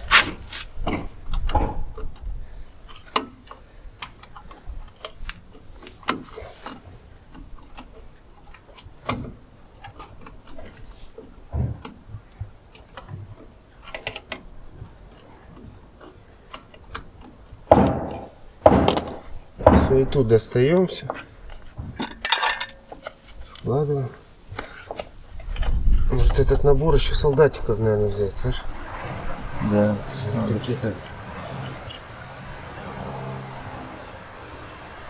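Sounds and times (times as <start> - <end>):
tools clicking and knocking metal: 22.0 - 23.1.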